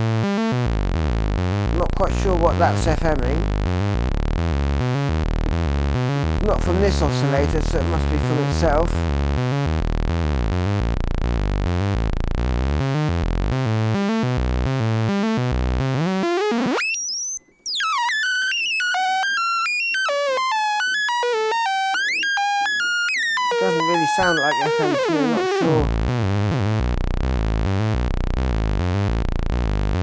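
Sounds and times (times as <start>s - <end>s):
synthesizer stepping sequence: 23.6s - 25.9s.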